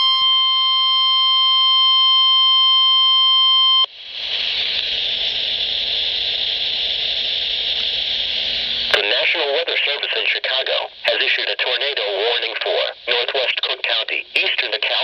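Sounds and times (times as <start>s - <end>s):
alarm tone: 0.0s - 3.9s
broadcast hiss: 3.8s - 15.0s
spoken warning: 9.0s - 15.0s.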